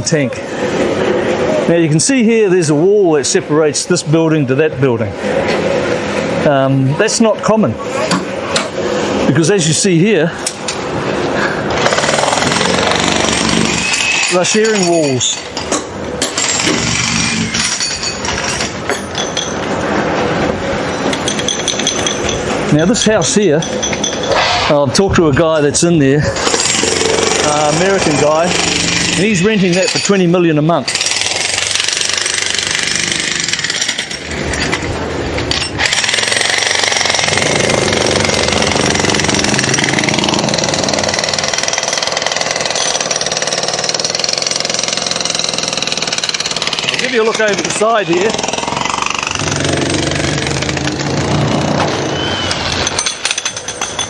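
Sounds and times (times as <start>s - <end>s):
jackhammer breaking concrete: 11.8s - 15.4s, 16.2s - 19.5s, 26.4s - 30.1s, 30.9s - 34.7s, 35.5s - 54.0s.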